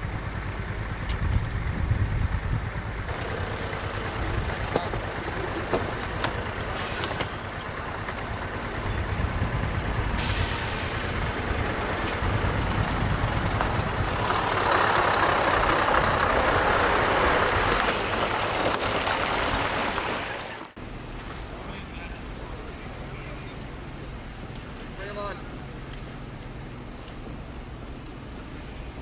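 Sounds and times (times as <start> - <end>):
heavy vehicle engine running: 0.0 - 29.0
air hiss: 10.1 - 11.3.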